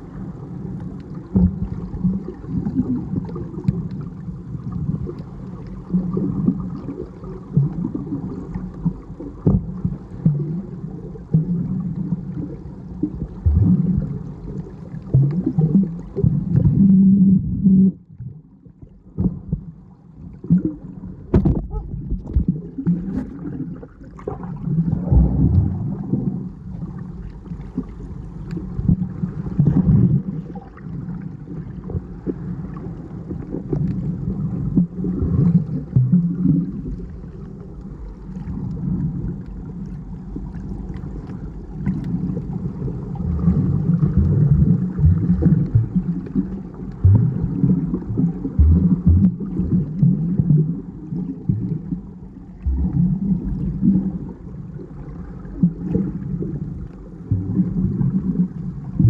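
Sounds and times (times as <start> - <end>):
muffled water sloshing underwater: 0.0 - 59.0.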